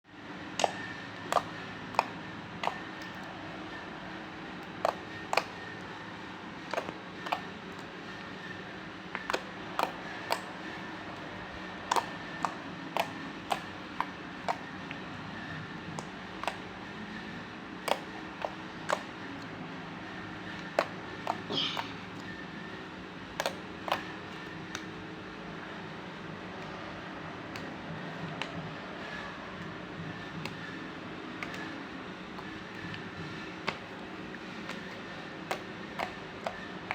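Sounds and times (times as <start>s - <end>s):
steady low hum: 0.1s - 36.9s
wet slime squelch: 0.4s - 4.0s, 4.6s - 5.9s, 6.6s - 22.3s, 23.3s - 24.9s.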